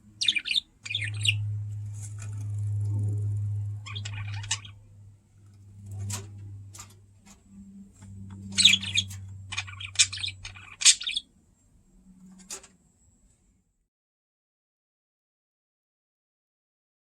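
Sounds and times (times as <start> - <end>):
low steady hum: 0.0 - 13.9
budgerigars chirping and warbling: 0.2 - 1.5, 3.6 - 4.9, 8.0 - 11.3.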